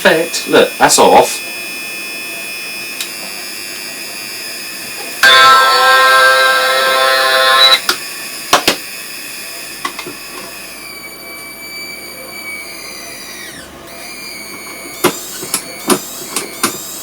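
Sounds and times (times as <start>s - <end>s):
high electronic whistle: 2.6s - 8.2s, 10.6s - 16.8s
loud buzzing drone: 4.9s - 8.3s.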